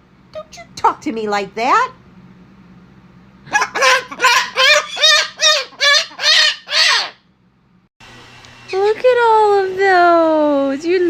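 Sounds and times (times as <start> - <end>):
parrot squawking: 3.5 - 7.2.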